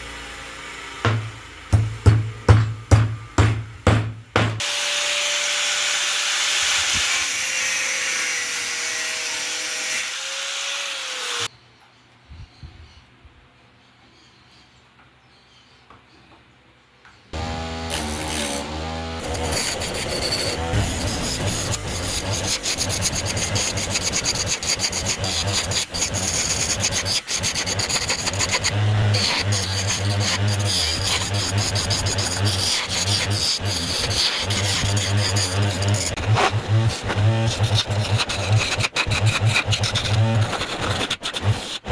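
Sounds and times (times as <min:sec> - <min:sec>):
knock: 0:01.0 - 0:04.6
wood scraping on lathe: 0:17.4 - 0:41.9.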